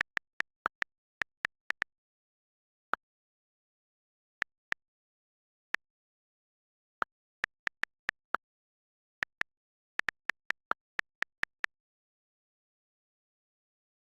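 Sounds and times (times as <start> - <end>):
phone keyboard taps: 0.0 - 1.8.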